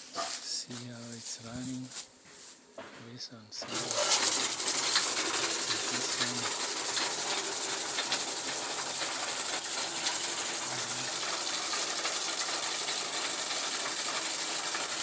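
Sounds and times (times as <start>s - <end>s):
chaff cutter clattering: 3.6s - 15.0s.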